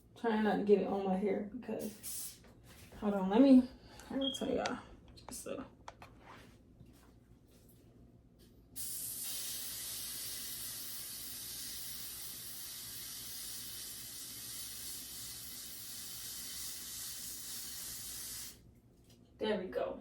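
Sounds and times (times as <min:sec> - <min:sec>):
aerosol spray hissing: 0:08.8 - 0:18.6.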